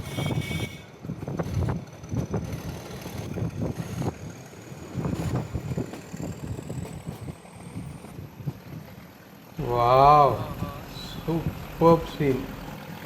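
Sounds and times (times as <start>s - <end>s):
train rumble: 0.0s - 13.0s
wheels clattering over track: 0.0s - 13.0s
faint high whine: 9.6s - 12.9s.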